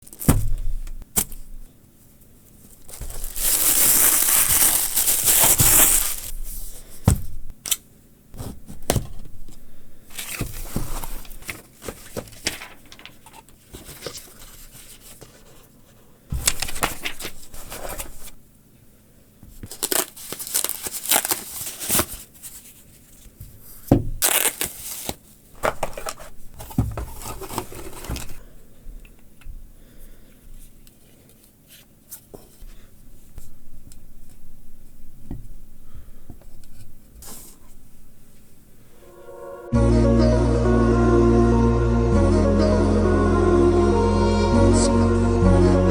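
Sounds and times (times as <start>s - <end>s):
packaging tearing: 0.0s - 0.5s, 2.8s - 6.4s, 19.7s - 22.3s, 24.2s - 26.3s
rustling and crinkling wrapping: 0.0s - 7.5s, 8.4s - 15.7s, 16.3s - 18.4s, 19.5s - 28.5s.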